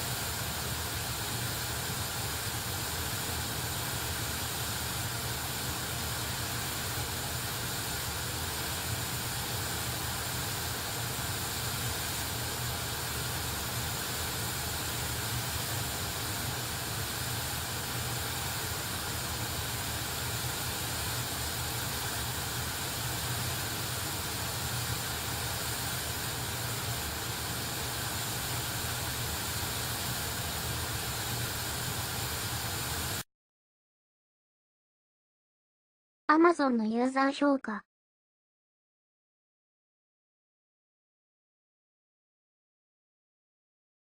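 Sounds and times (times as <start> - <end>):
pink noise hiss with bass: 0.0 - 33.2.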